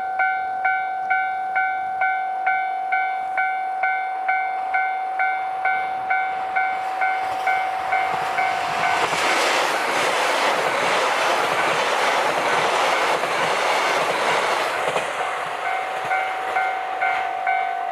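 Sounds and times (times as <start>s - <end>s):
level crossing warning bell: 0.0s - 9.4s, 15.5s - 17.9s
diesel train passing: 0.0s - 17.9s
train wheel clatter: 6.2s - 17.8s.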